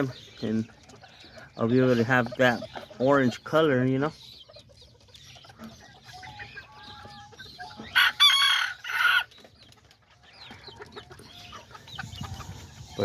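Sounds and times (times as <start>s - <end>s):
chickens clucking: 0.0s - 13.0s
rooster crowing: 8.0s - 9.3s.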